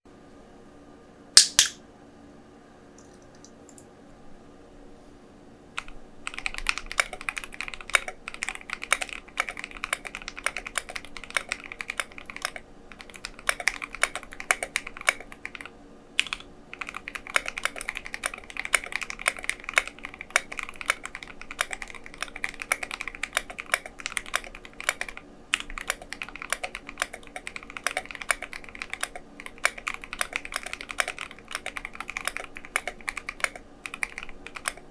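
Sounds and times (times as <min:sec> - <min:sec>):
single sharp click: 0:01.4 - 0:01.8
fast typing on mechanical keyboard: 0:05.8 - 0:34.9.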